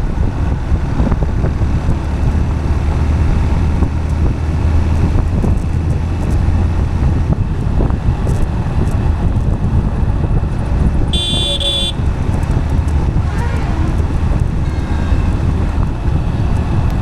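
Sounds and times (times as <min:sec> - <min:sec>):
low vehicle rumble: 0:00.0 - 0:17.0
wind noise on microphone: 0:00.0 - 0:17.0.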